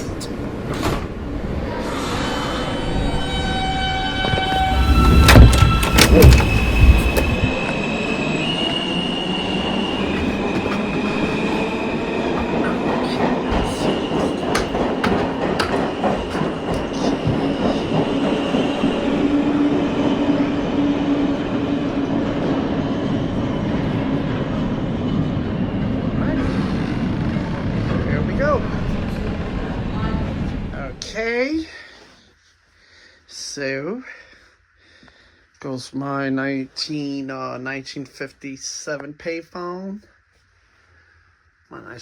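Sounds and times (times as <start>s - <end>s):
train rumble: 0.0s - 31.1s
train wheels squealing on rails: 1.7s - 20.4s
track clicks and clatter: 4.4s - 7.6s.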